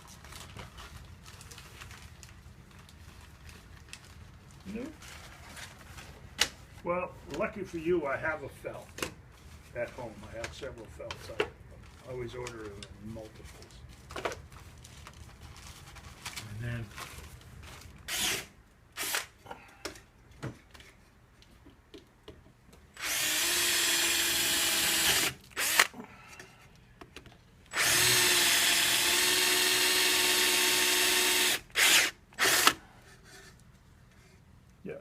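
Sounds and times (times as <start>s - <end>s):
power drill running: 18.1s - 19.3s, 23.0s - 25.9s, 27.7s - 32.8s.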